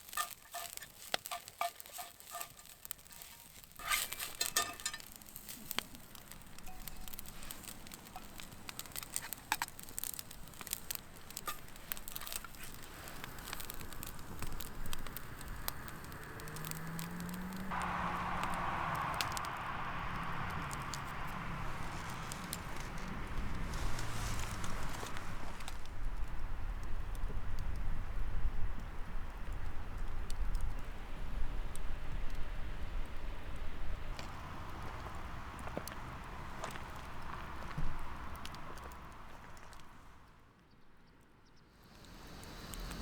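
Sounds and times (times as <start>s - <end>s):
steady hiss: 0.0s - 25.8s, 41.8s - 43.0s
wood fire crackling and popping: 0.0s - 40.4s, 41.8s - 43.0s.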